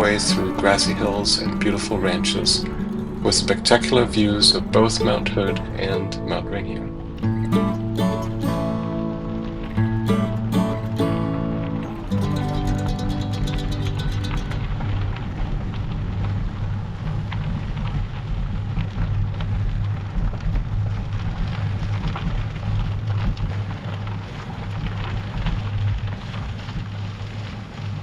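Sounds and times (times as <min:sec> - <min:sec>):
bicycle tyres rolling on gravel: 0:13.8 - 0:28.0.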